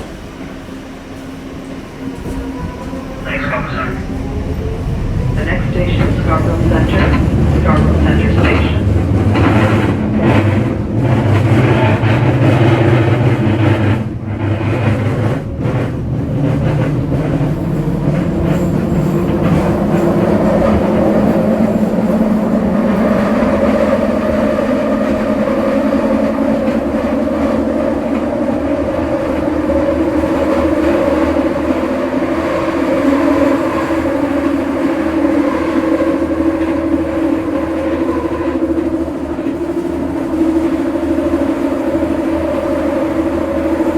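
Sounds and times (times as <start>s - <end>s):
train wheels rumbling on rail: 0.0s - 43.9s.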